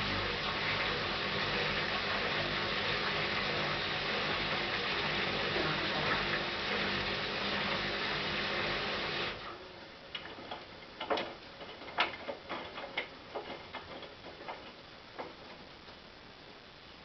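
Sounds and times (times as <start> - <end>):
washing machine drum whirring: 0.0 - 16.0
small clicks and ticks: 10.1 - 16.1.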